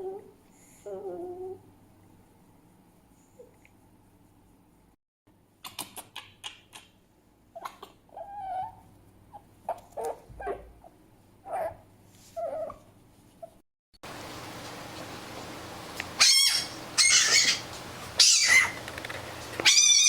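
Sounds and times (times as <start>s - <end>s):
fox yipping and whimpering: 7.6s - 12.8s, 16.2s - 17.6s, 18.2s - 18.8s, 19.6s - 20.0s.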